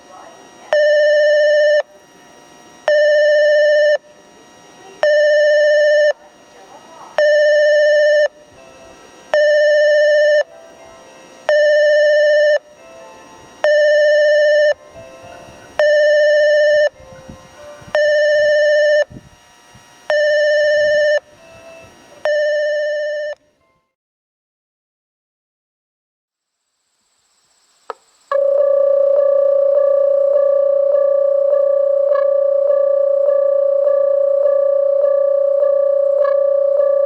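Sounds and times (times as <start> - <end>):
train approach warning buzzer: 0.0 - 23.5, 27.9 - 37.0.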